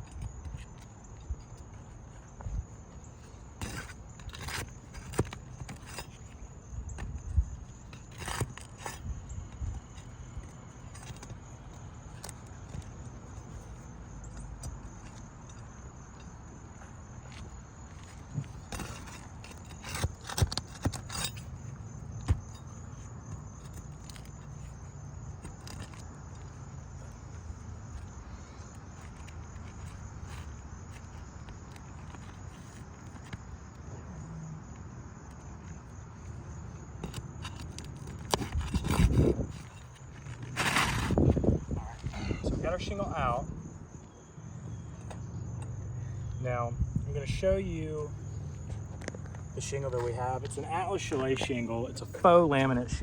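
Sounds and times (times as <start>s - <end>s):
metal bar clinks and scrapes: 12.1s - 24.8s.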